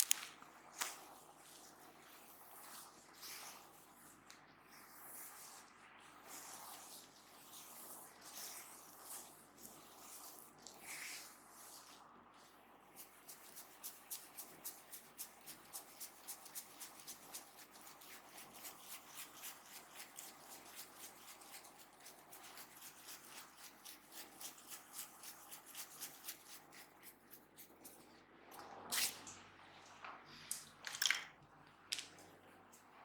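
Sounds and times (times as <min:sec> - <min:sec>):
hands rubbing scalp and hair: 0:13.0 - 0:28.0.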